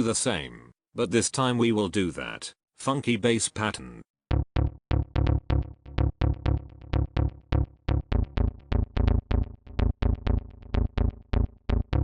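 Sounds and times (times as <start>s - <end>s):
staccato synth bass: 4.3s - 12.0s.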